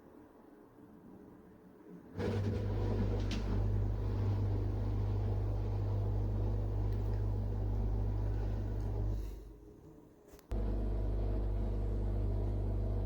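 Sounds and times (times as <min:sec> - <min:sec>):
low mechanical hum: 0:01.0 - 0:13.0.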